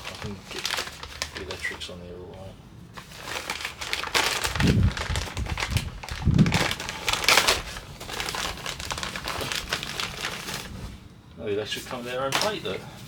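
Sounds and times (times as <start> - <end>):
hands crinkling and rustling: 0.0 - 13.0
dull low bumps: 4.4 - 7.2.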